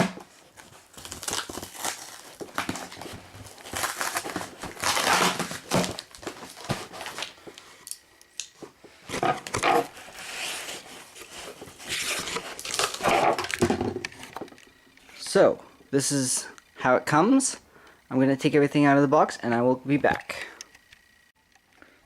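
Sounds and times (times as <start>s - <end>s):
cardboard and tape ripping: 0.0s - 7.4s, 9.1s - 14.4s.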